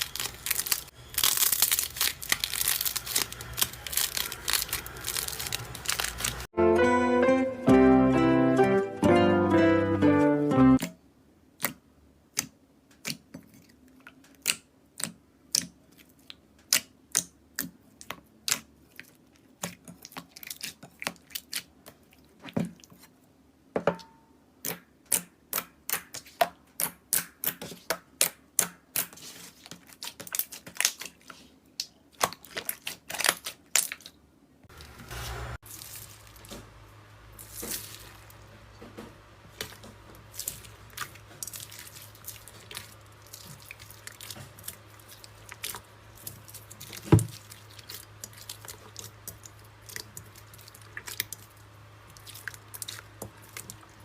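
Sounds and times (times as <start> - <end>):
wet slime squishing: 0.0 - 6.5, 11.5 - 23.3, 24.6 - 34.2, 35.6 - 36.7, 37.4 - 38.6, 39.5 - 54.0.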